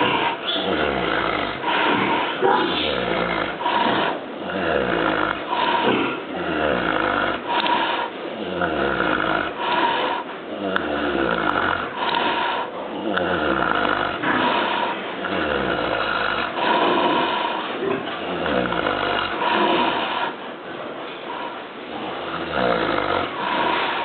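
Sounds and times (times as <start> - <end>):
pig snoring: 0.0 - 24.0.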